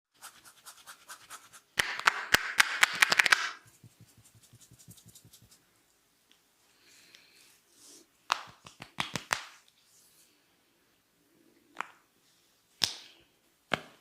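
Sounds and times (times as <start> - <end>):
hands scratching hair and scalp: 0.2 - 1.6, 3.2 - 5.6.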